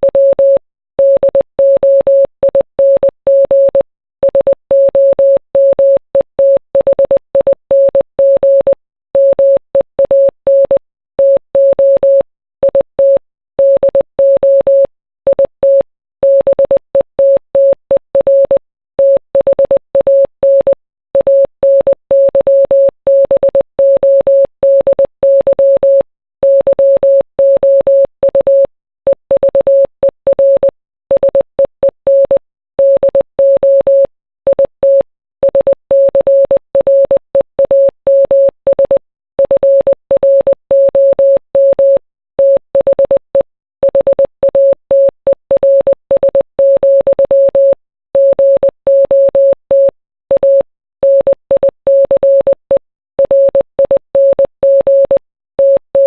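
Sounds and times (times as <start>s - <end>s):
morse code beeps: 0.1s - 56.0s.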